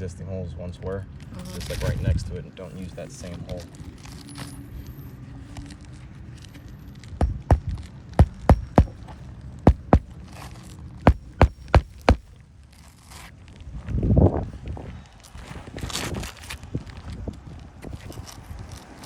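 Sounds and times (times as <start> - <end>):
hammer driving nails into shingles: 7.2 - 9.1, 9.7 - 10.1, 11.1 - 12.3.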